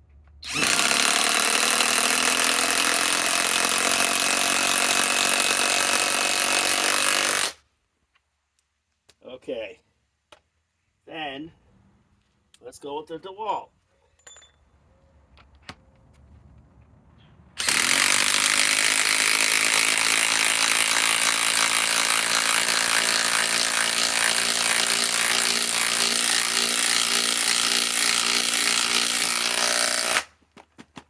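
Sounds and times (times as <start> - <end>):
impact wrench driving screw: 0.4 - 7.6, 17.6 - 30.3.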